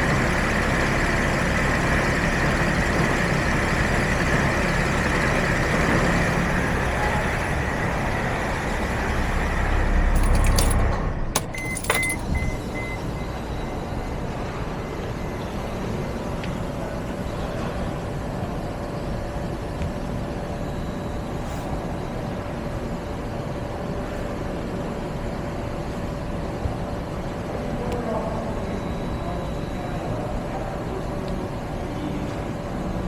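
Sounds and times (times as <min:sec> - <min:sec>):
diesel engine rumble: 0:00.0 - 0:33.0
short beeping tone: 0:11.4 - 0:13.4.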